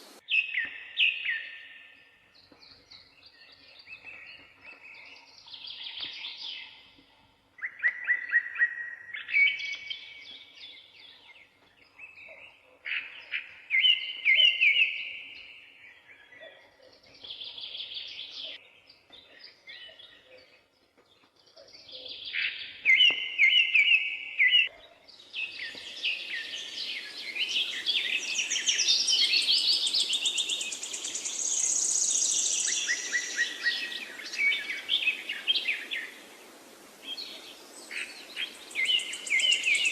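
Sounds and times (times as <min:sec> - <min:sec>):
background hiss: 0:00.0 - 0:00.3, 0:25.1 - 0:39.9
songbirds trilling: 0:02.0 - 0:39.9.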